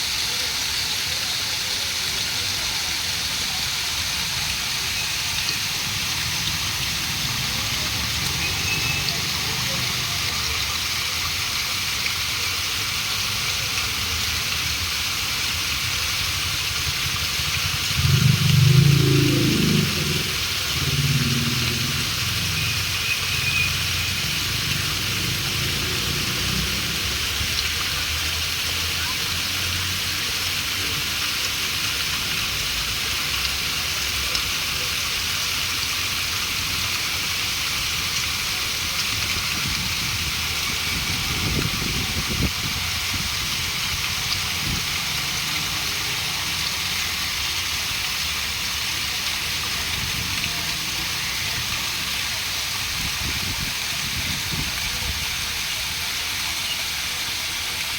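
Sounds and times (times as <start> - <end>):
flowing water rushing: 0.0 - 57.9
low rumble: 17.9 - 21.8.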